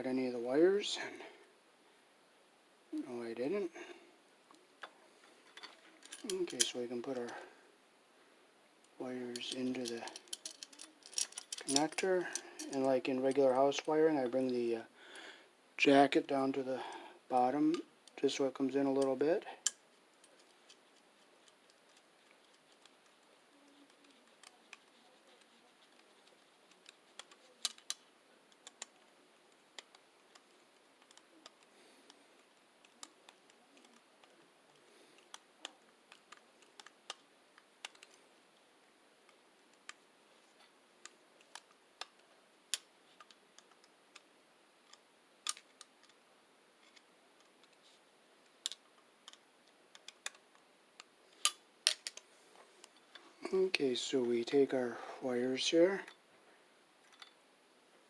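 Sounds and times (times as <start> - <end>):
hands clicking small electrical parts: 9.4 - 12.8, 19.0 - 31.7, 32.4 - 38.2, 44.9 - 46.2, 48.6 - 53.0.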